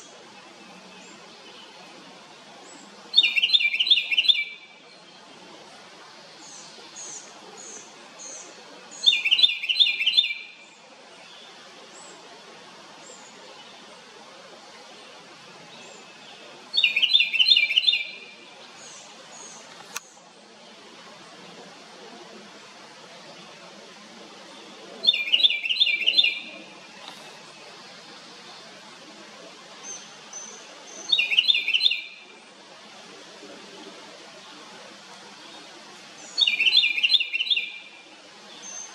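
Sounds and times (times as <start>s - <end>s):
wren singing rapid notes: 29.8s - 32.2s.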